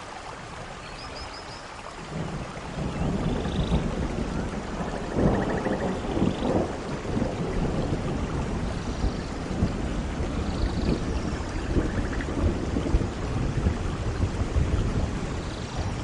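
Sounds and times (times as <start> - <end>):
steady rain: 0.0 - 16.0
thunder rumbling: 2.1 - 16.0.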